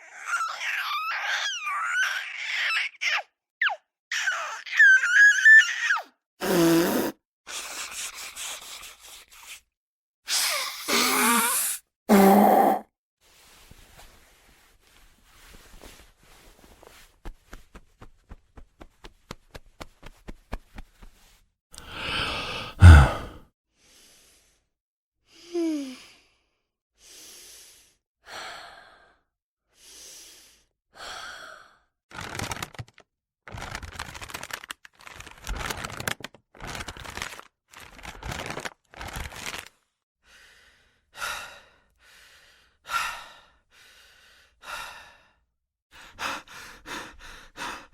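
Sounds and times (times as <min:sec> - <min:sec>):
person sighing: 0:06.4 - 0:07.1, 0:10.4 - 0:12.8, 0:21.8 - 0:23.4
sharp gasps: 0:10.3 - 0:11.8, 0:21.8 - 0:23.4
person breathing and panting: 0:21.8 - 0:24.7, 0:25.3 - 0:31.8, 0:40.2 - 0:47.9.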